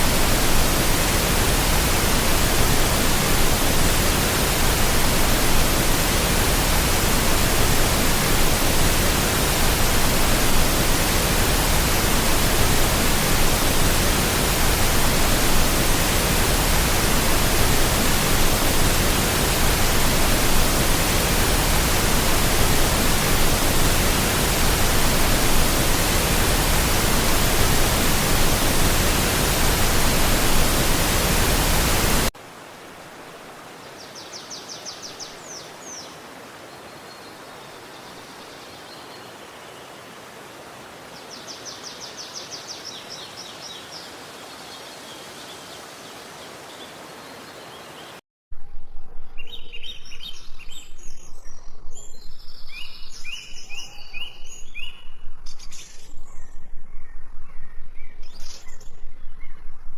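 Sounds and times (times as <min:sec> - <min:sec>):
steady rushing hiss: 0:00.0 - 0:33.8.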